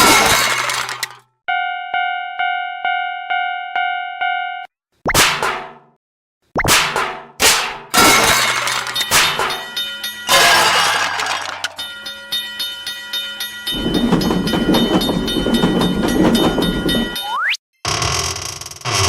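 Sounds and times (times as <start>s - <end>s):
cartoon crashes and breaking: 0.0s - 1.2s, 6.6s - 9.6s
train rumbling past: 13.7s - 17.2s
ringing: 13.7s - 17.3s.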